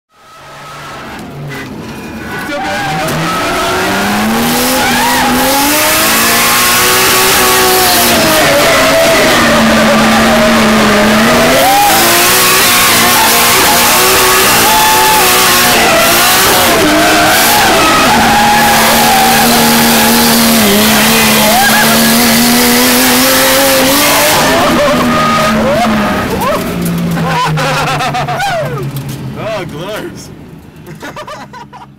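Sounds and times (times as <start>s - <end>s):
car engine revving: 0.1s - 31.3s
tyre squeal: 7.0s - 26.7s.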